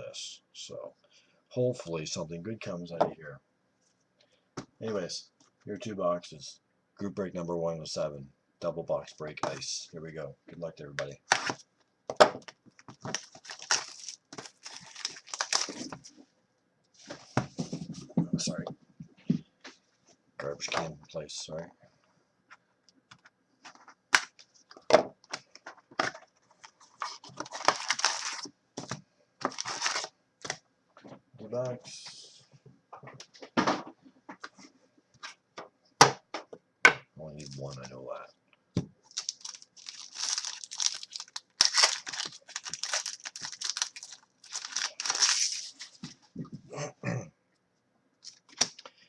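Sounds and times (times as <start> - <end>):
packaging crinkling: 12.4 - 16.2, 24.1 - 28.5, 29.4 - 30.6, 39.0 - 46.2
packaging tearing: 13.0 - 16.1, 26.7 - 28.5, 29.5 - 30.1, 39.1 - 45.9.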